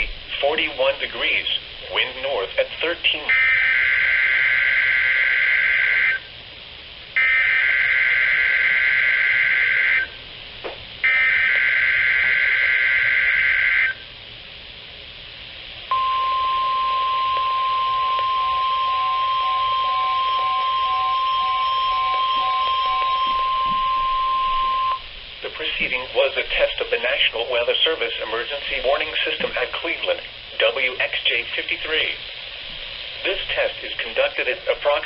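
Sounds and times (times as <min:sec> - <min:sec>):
steady warning alarm tone: 0:02.8 - 0:06.4, 0:07.2 - 0:10.3, 0:11.0 - 0:14.2, 0:15.9 - 0:30.0
screeching digital header bursts: 0:03.3 - 0:06.3, 0:07.2 - 0:10.2, 0:11.0 - 0:14.0, 0:15.9 - 0:25.1
faint pulsing beep: 0:15.9 - 0:25.0.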